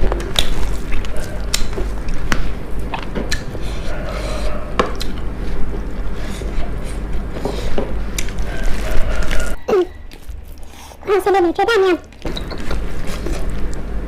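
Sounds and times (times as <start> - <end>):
crisp food crunching: 0.0 - 2.3, 8.1 - 11.0
wet chewing: 0.0 - 13.9.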